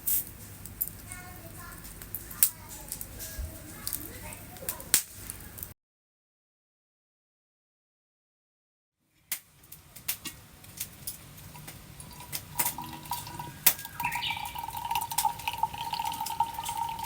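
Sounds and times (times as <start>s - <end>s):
water trickling and dripping: 9.6s - 17.0s.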